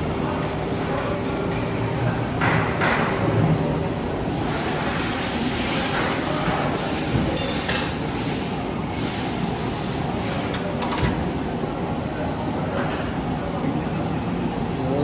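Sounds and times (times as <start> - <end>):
workshop machinery rumbling: 0.0 - 15.0
metallic clinking: 7.4 - 8.1.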